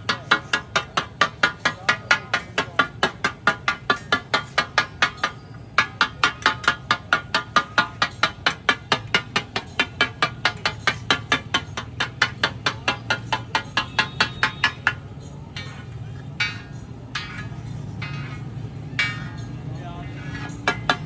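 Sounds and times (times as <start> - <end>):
metal spatula striking iron griddle: 0.0 - 21.0.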